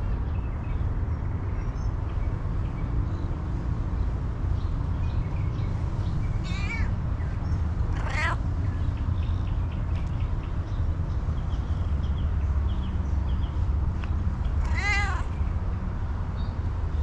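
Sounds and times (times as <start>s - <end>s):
cat meowing: 6.4s - 7.0s, 7.9s - 8.4s, 14.6s - 15.4s.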